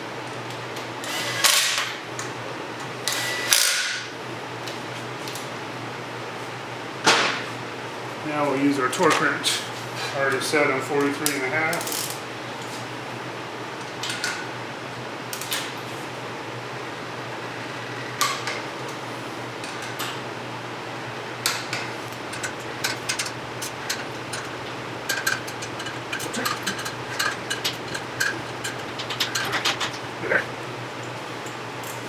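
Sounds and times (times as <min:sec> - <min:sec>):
steady low hum: 0:20.6 - 0:32.0
torque wrench clicking: 0:22.1 - 0:30.2.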